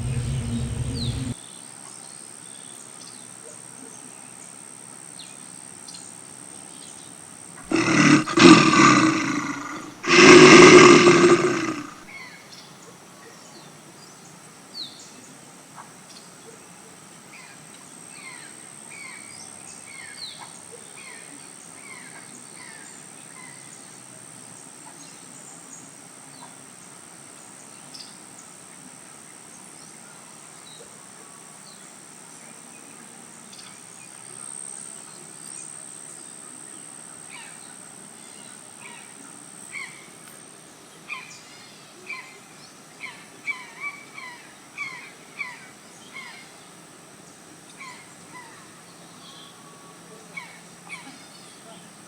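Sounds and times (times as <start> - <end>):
large animal deep roar: 0.0 - 1.4, 7.7 - 12.0
steady high hum: 0.0 - 1.4.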